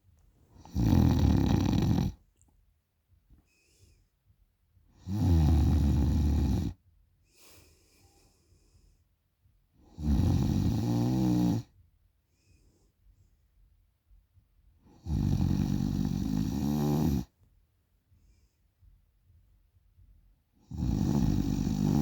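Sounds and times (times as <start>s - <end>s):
woman snoring: 0.6s - 2.2s, 5.0s - 6.8s, 9.9s - 11.7s, 15.0s - 17.3s, 20.7s - 22.0s.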